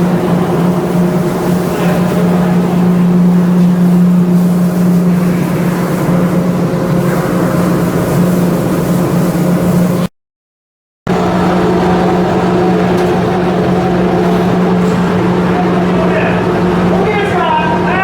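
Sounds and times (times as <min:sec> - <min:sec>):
large engine humming: 0:00.0 - 0:10.1, 0:11.1 - 0:18.0
rushing noise: 0:11.1 - 0:18.0.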